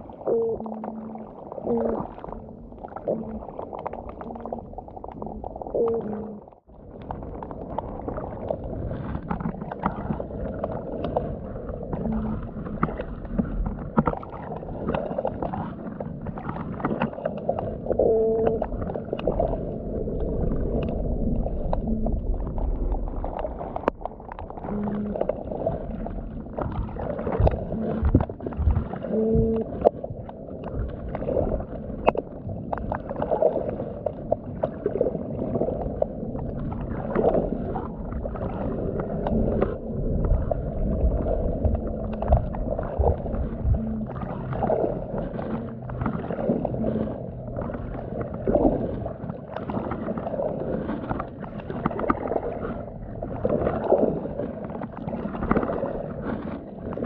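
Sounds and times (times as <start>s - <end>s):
fish drumming calls underwater: 0.0s - 6.6s, 11.8s - 13.0s, 16.3s - 31.2s, 37.0s - 50.4s
steady low hum: 39.0s - 49.2s.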